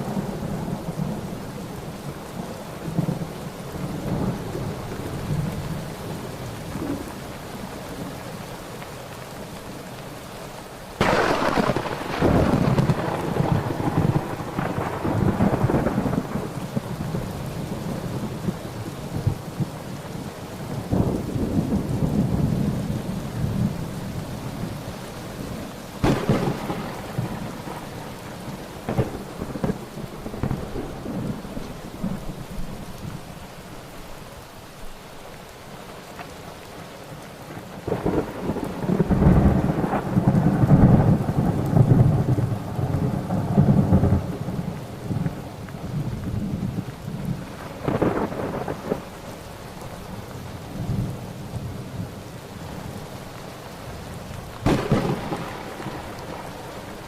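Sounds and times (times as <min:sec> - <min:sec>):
steady rain: 0:00.0 - 0:57.0
thunder rumbling and cracking: 0:11.0 - 0:19.9, 0:20.6 - 0:24.8, 0:25.4 - 0:33.2, 0:37.6 - 0:49.4, 0:54.0 - 0:57.0.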